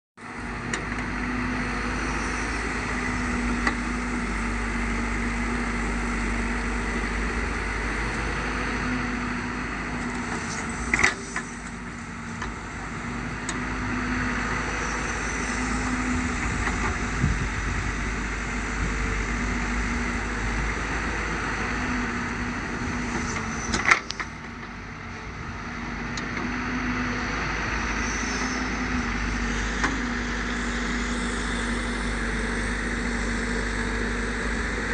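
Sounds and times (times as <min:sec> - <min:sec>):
excavator diesel engine running: 0:00.2 - 0:34.9.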